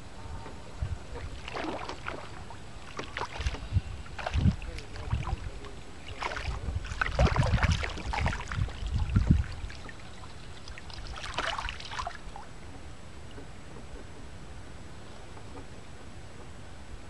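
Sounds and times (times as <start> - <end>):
water splash: 1.3 - 3.6, 4.2 - 12.5.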